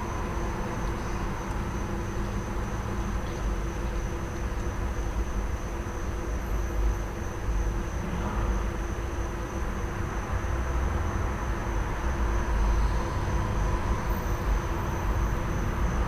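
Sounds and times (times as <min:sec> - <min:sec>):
traffic noise: 0:00.0 - 0:16.0.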